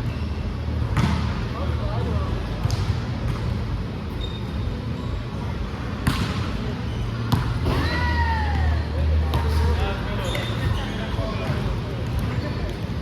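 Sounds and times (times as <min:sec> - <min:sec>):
steady low hum: 0:00.0 - 0:13.0
volleyball being struck: 0:06.0 - 0:06.5.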